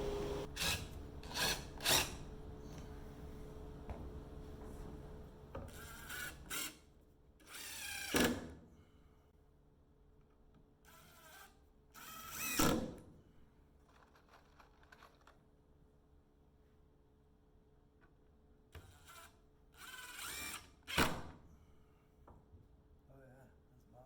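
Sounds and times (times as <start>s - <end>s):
power drill driving screws: 18.8s - 21.0s.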